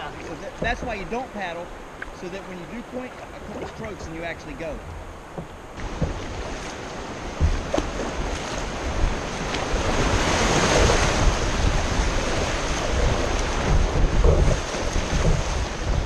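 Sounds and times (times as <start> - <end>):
rushing whitewater: 0.0 - 16.0
wind buffeting microphone: 0.0 - 16.0.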